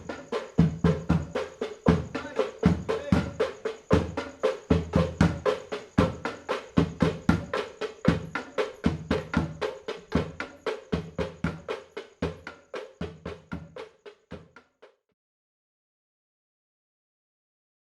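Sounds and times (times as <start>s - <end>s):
rhythmic drumming: 0.0s - 14.7s
deep bass drum hits: 7.3s - 7.5s.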